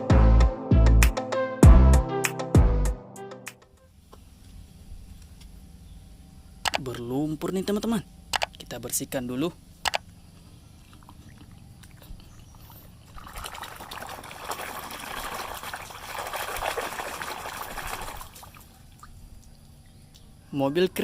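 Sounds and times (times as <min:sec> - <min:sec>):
water pouring and trickling: 0:10.8 - 0:19.8.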